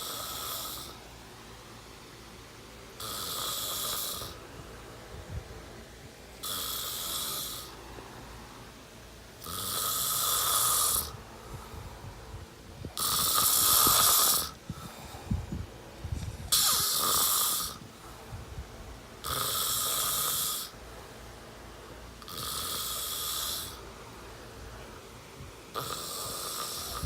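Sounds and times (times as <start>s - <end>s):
loud hissing snores: 0.0s - 1.1s, 2.9s - 4.4s, 6.3s - 7.8s, 9.4s - 12.1s, 12.8s - 15.5s, 16.4s - 18.3s, 19.2s - 20.8s, 22.2s - 23.9s, 25.7s - 27.0s
quiet breathing: 0.0s - 1.2s, 10.8s - 16.8s.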